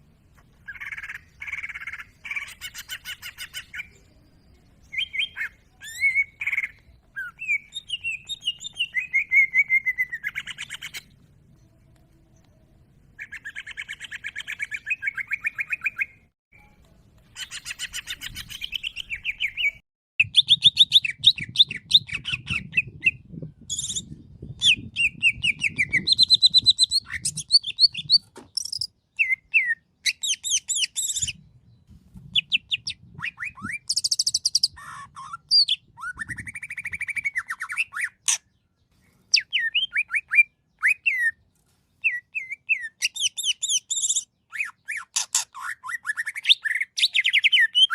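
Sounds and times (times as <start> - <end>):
bird singing trills and whistles: 0.6 - 11.2, 13.2 - 41.4, 42.0 - 47.9.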